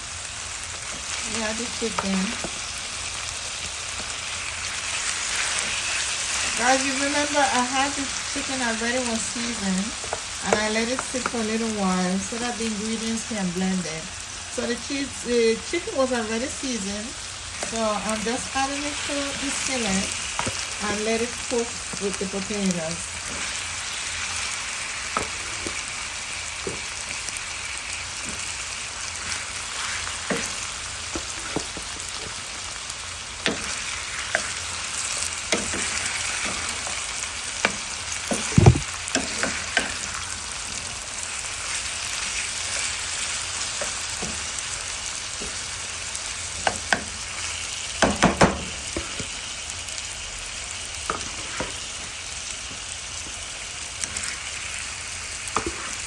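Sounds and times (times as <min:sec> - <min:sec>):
food sizzling in a skillet: 0:00.0 - 0:56.0
utensil clicking and knocking on pan: 0:46.6 - 0:47.1, 0:48.0 - 0:49.3.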